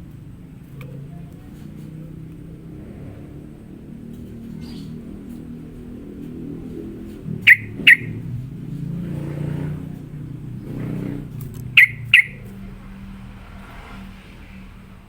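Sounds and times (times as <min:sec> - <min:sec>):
bird giving sharp call notes: 0:07.3 - 0:08.3, 0:11.8 - 0:12.5.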